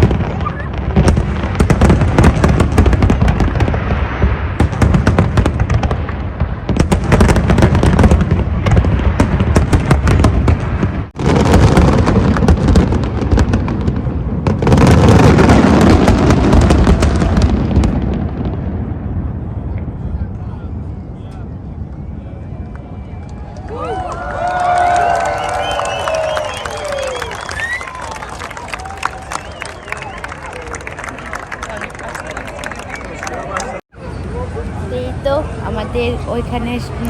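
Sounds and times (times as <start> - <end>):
fireworks banging and crackling: 0.0 - 20.2, 34.9 - 37.0
deep fireworks booms: 0.0 - 22.7.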